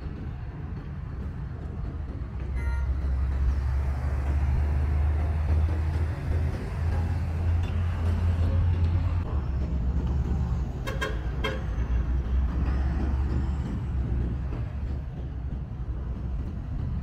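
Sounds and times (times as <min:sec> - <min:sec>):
road traffic: 0:00.0 - 0:17.0
vehicle horn toots: 0:02.6 - 0:03.0.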